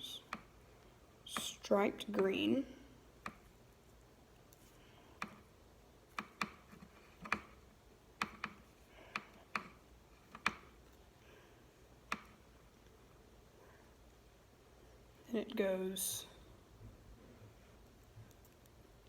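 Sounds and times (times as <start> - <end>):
small wires clicking and tapping: 0.0 - 0.6, 3.2 - 3.5, 4.5 - 5.5, 6.1 - 7.6, 8.2 - 11.0, 12.0 - 12.4.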